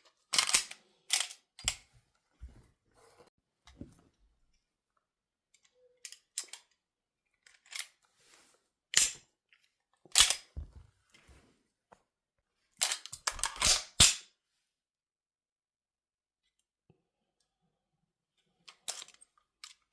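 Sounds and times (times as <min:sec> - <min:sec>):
gun mechanism clicks and clacks: 0:00.3 - 0:01.8, 0:10.1 - 0:10.5, 0:12.8 - 0:14.2.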